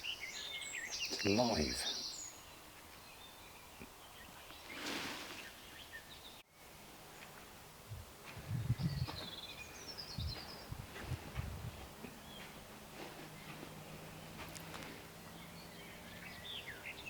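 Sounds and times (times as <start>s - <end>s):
faint bird calls and chirps: 8.5s - 11.1s.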